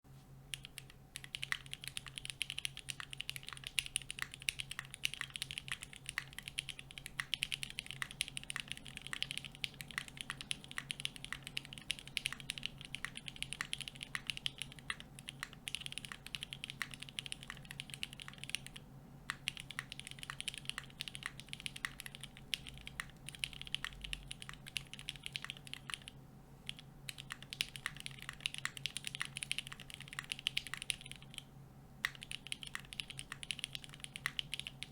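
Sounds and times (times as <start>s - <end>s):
faint steady hum: 0.1s - 34.9s
fast typing on mechanical keyboard: 0.5s - 34.9s.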